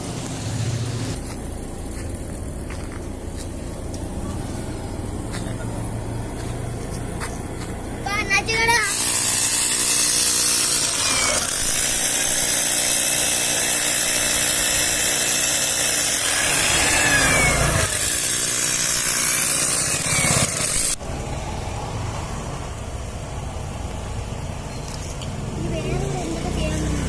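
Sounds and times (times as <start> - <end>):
low steady rumble: 0.0 - 8.8
machine running with strong hiss: 0.0 - 25.2.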